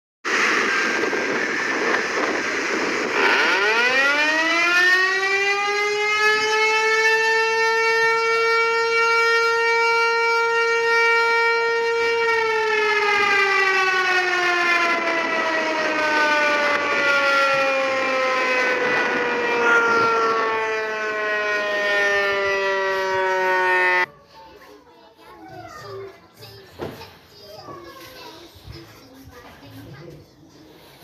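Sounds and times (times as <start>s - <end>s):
rushing noise: 0.3s - 5.3s, 12.0s - 24.1s
tornado warning siren: 0.3s - 24.2s.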